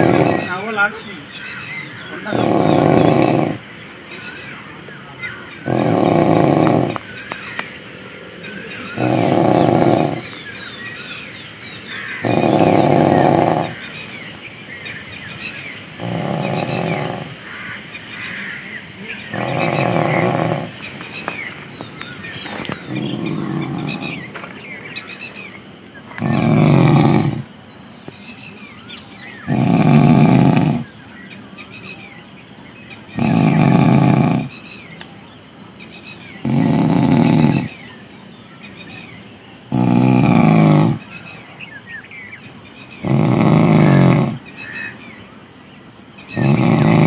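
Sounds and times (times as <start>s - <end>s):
man snoring loudly: 0.0s - 0.7s, 2.2s - 3.6s, 5.6s - 7.0s, 8.8s - 10.4s, 12.2s - 13.8s, 16.0s - 17.4s, 19.2s - 20.8s, 26.2s - 27.5s, 29.5s - 30.9s, 33.2s - 34.5s, 36.4s - 37.8s, 39.7s - 41.0s, 43.0s - 44.4s, 46.3s - 47.0s.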